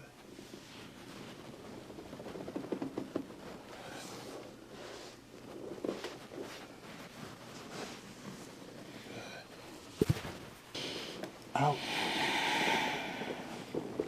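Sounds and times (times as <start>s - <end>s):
clothing rustling: 0.1s - 10.8s.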